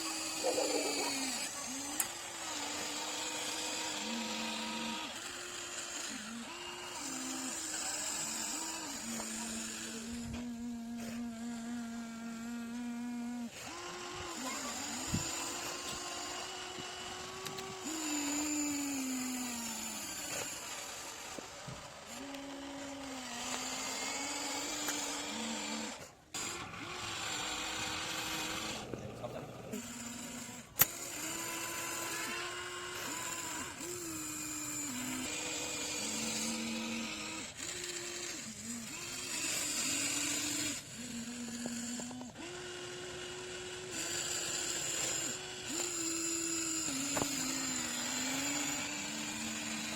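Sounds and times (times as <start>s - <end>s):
electric motors whining: 0.0s - 49.9s
sharp click: 30.8s - 31.0s.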